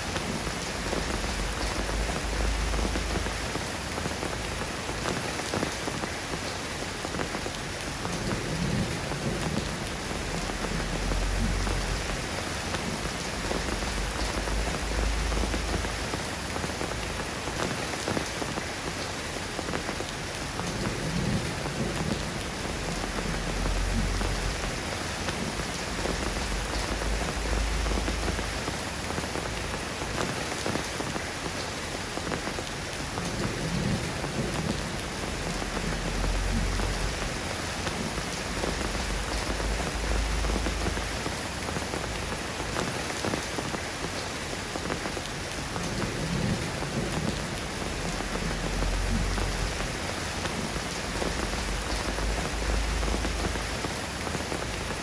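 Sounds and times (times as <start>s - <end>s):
steady rain falling: 0.0s - 55.0s
deep low rumble: 35.2s - 37.5s.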